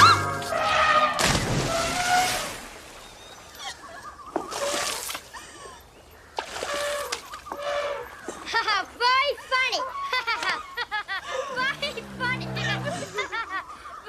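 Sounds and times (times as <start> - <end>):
water splashing: 0.0 - 5.4, 6.3 - 7.7.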